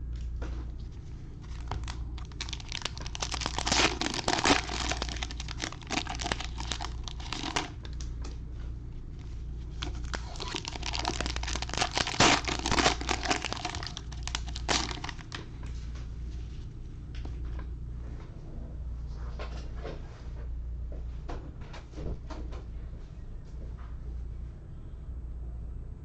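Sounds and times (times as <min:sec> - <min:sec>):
foil wrappers tearing and crinkling: 0:01.5 - 0:08.0, 0:09.8 - 0:15.4.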